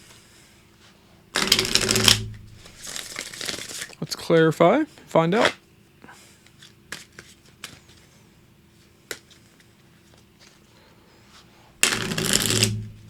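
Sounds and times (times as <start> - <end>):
cards shuffling: 1.4 - 4.0, 11.8 - 12.8
cards tapping and clicking: 11.8 - 12.8.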